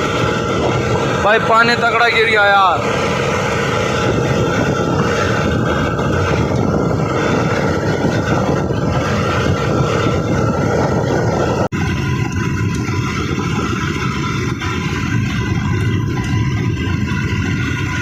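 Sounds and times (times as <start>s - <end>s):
tractor diesel engine running: 0.0s - 18.0s.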